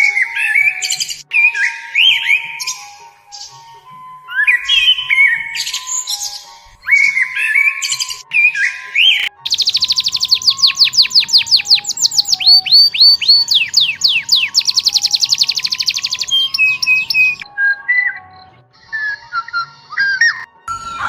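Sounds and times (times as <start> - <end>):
soft background music: 0.0 - 21.0
short whistled notes: 4.2 - 21.0
songbird trilling: 4.3 - 17.4.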